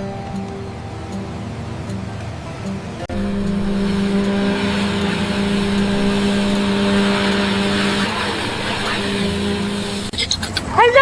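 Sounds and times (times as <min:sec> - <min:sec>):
vehicle engine running: 0:03.0 - 0:10.3
hiss: 0:03.1 - 0:10.6.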